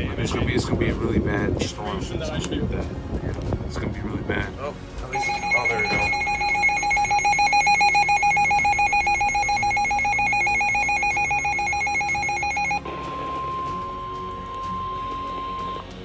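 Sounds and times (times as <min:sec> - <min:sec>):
steady one-pitch warning tone: 0:05.1 - 0:16.0
fast-trilling alarm: 0:05.2 - 0:15.9.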